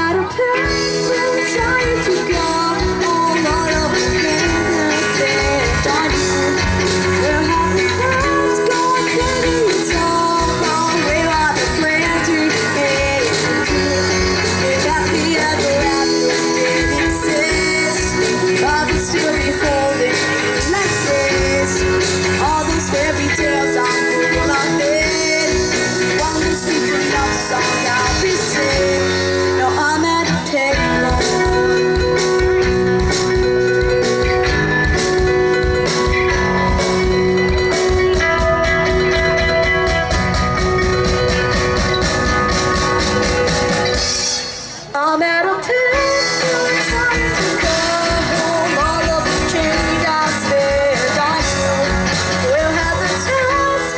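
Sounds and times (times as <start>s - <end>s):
band playing pop-rock: 0.0s - 53.9s
sliding pitch melody line: 0.0s - 53.9s
steady drum beat: 32.1s - 44.9s.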